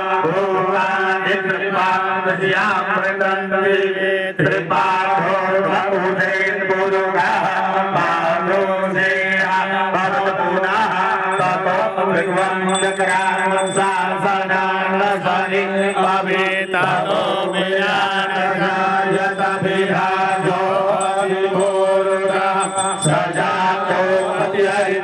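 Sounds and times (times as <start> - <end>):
voices chanting mantra: 0.0 - 25.0
steady held tones: 11.3 - 25.0.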